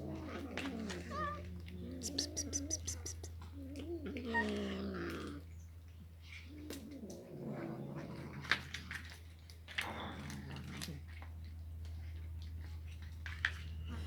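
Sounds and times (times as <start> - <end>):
cat meowing: 2.0 - 3.3
sharp clicks: 2.0 - 3.3.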